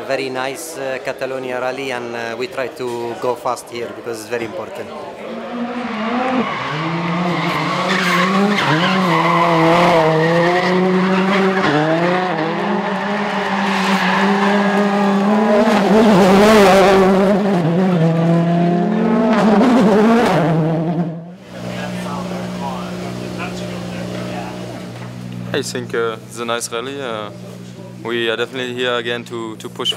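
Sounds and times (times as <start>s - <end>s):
tyres skidding and squealing: 5.2s - 18.8s
car engine at high revs: 5.2s - 25.9s.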